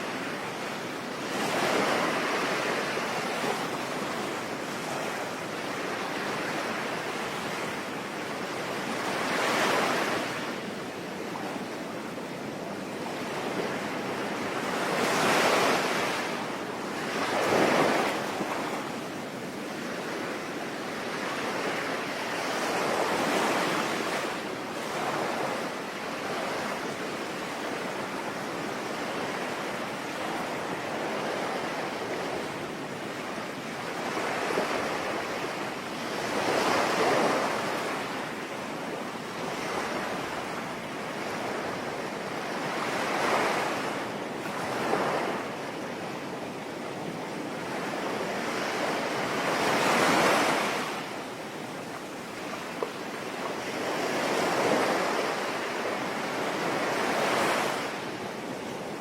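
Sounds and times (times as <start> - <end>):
sea waves breaking: 12.8 - 19.1, 19.7 - 59.0.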